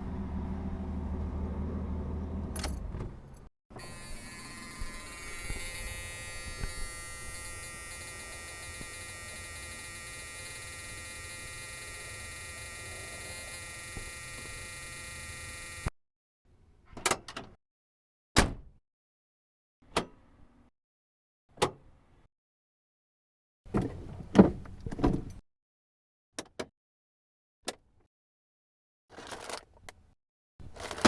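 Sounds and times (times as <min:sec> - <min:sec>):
electric buzzing: 0:03.8 - 0:15.9.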